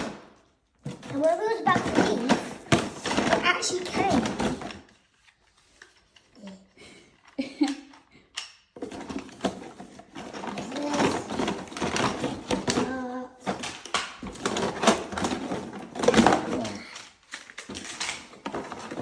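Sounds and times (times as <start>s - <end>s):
plastic toy parts clattering: 0.0s - 19.0s
packaging rustling: 8.8s - 19.0s.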